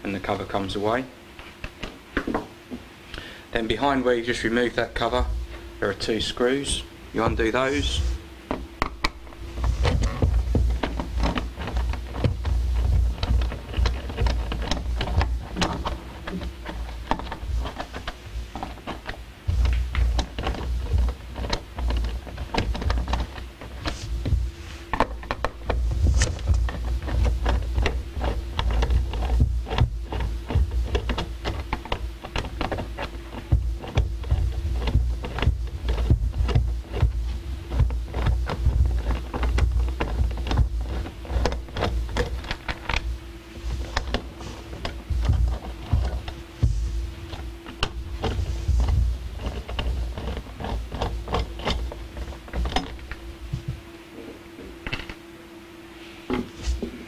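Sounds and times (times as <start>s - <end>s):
faint steady hum: 0.0s - 57.0s
screwdriver clicking and scraping: 8.9s - 53.5s.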